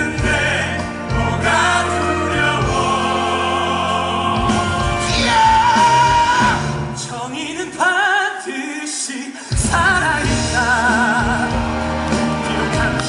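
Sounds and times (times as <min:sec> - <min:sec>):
musical accompaniment: 0:00.0 - 0:08.3, 0:09.5 - 0:13.0
person singing with vibrato: 0:00.0 - 0:13.0.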